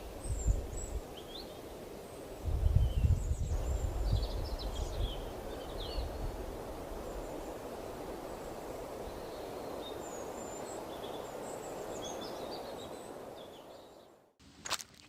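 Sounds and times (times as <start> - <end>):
steady wind blowing: 0.0 - 14.3
small birds chirping faintly: 0.0 - 15.0.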